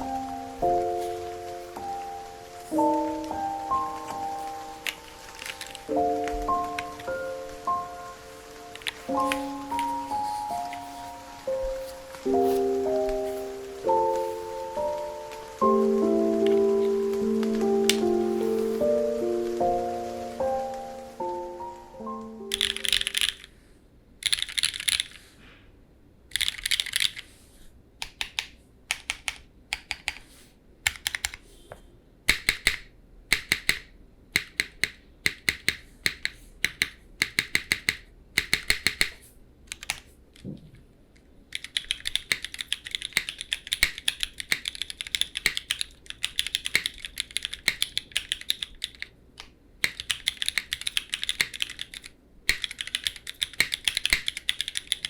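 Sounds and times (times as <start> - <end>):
mechanical keyboard typing: 2.7 - 7.3, 8.7 - 11.0, 22.4 - 23.5, 24.2 - 25.2, 26.3 - 27.3, 28.0 - 31.4, 32.3 - 40.5, 41.5 - 55.0.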